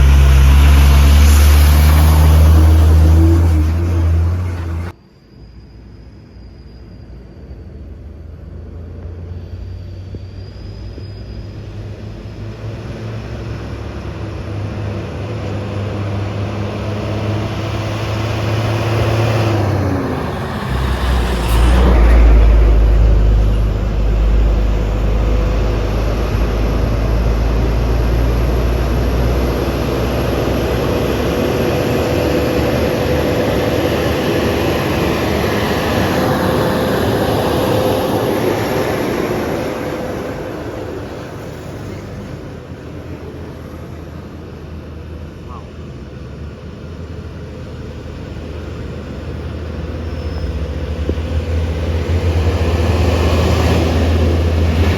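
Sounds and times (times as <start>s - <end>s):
truck diesel engine roaring: 0.0s - 5.0s, 8.4s - 54.9s.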